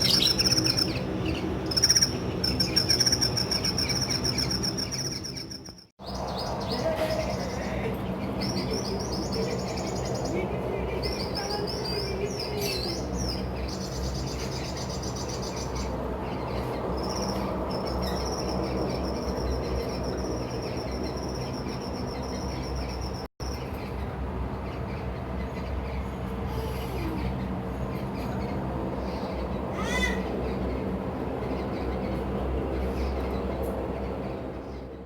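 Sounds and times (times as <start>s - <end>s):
hummingbird squeaky chips: 0.0s - 5.9s.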